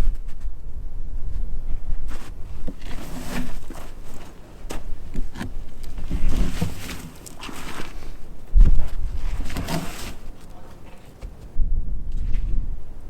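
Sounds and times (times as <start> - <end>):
heavy log knocking and scraping: 2.1 - 11.6
wind rumbling on microphone: 4.9 - 13.0.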